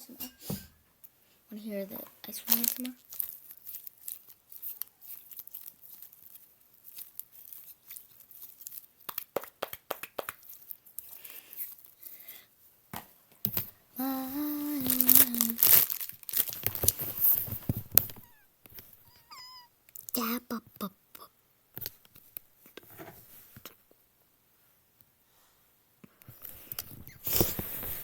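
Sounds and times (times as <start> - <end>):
foam toy clicks and rustles: 2.2 - 12.4, 14.6 - 18.9
girl humming a tune: 14.0 - 15.7.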